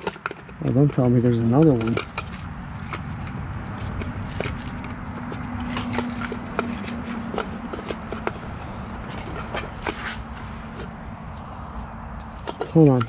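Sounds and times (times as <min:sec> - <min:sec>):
hand tools clicking and knocking: 0:00.0 - 0:13.0.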